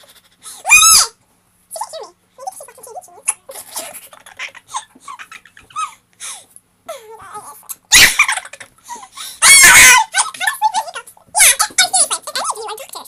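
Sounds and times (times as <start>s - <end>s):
girl crying out loudly: 9.4s - 10.1s.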